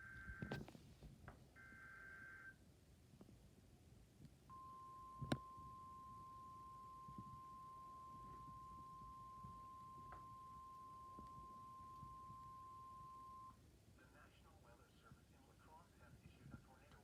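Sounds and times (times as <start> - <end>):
steady alarm tone: 4.5 - 13.6.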